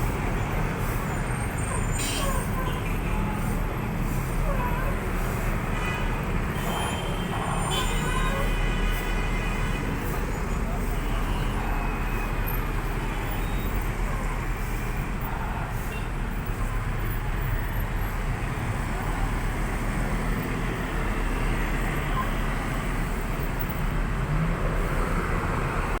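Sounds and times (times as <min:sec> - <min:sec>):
roadside traffic noise: 0:00.0 - 0:26.0.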